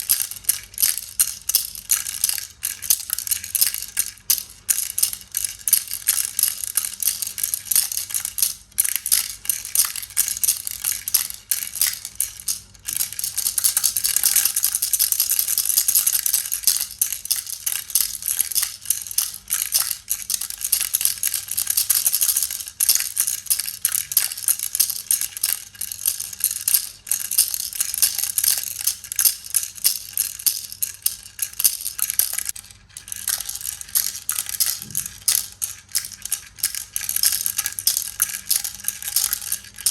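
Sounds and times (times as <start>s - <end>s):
baby rattle shaking: 0.0s - 39.9s.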